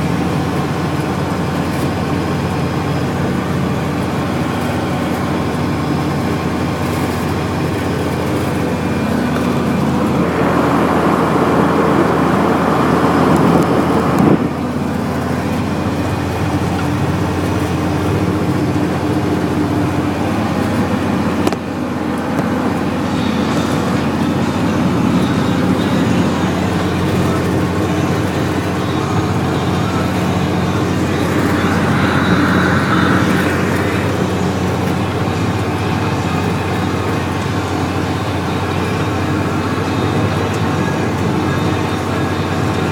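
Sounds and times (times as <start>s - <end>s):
snowplow truck engine drone: 0.0s - 42.9s
rushing scraping noise: 4.4s - 37.3s.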